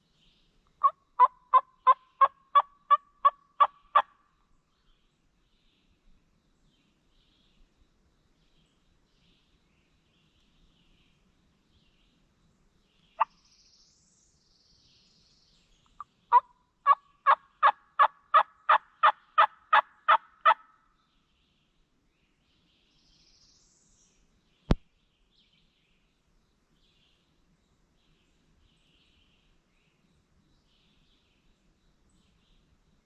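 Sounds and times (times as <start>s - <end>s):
faint songbird chirps: 0.0s - 33.0s
turkey call cluck: 0.8s - 4.1s, 16.3s - 20.7s
turkey call yelps: 16.3s - 20.6s.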